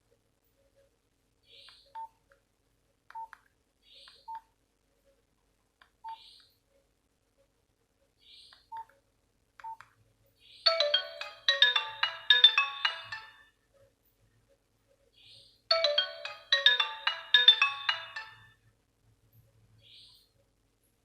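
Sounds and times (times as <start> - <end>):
phone ringtone bright notes: 10.7 - 13.5, 15.7 - 18.6.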